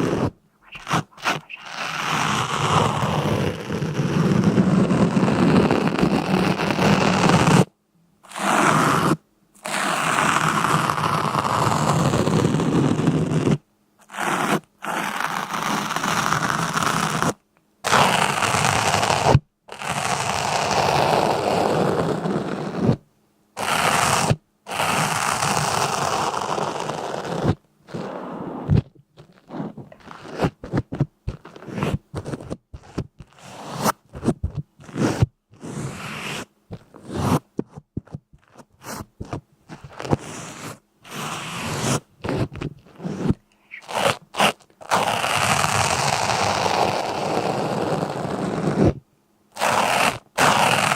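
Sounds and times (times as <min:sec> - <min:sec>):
long steady scrapes: 0:00.0 - 0:07.0
short crunches: 0:27.3 - 0:40.8, 0:41.6 - 0:46.2.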